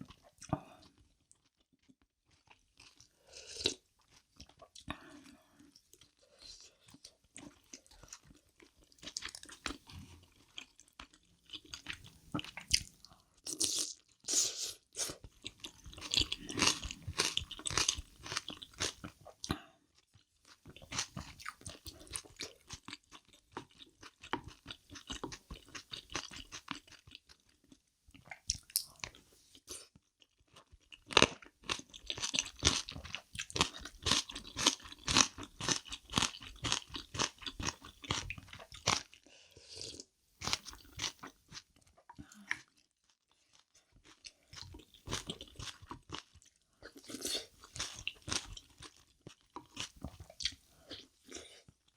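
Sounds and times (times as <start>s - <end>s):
crunchy chewing: 15.0s - 19.2s, 28.2s - 39.2s, 39.9s - 51.6s.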